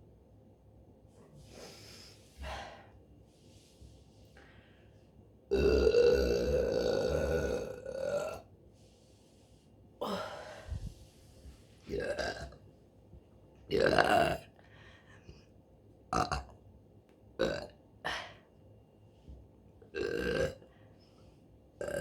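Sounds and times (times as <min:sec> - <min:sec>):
woman burping: 0:05.5 - 0:08.4, 0:12.0 - 0:12.6.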